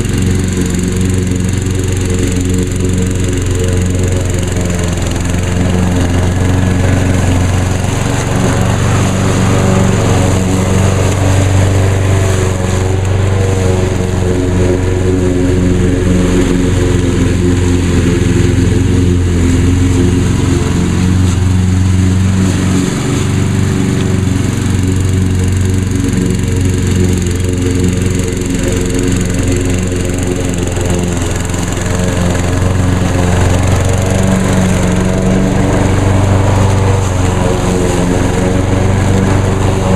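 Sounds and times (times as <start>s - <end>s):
lawn mower engine running: 0.0s - 39.9s.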